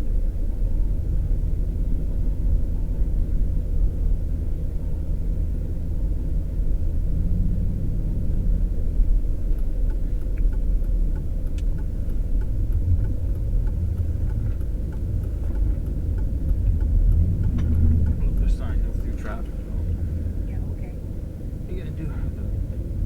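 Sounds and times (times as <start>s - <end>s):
vehicle engine and tyres rumbling: 0.0s - 23.0s
faint regular tick: 9.5s - 20.0s.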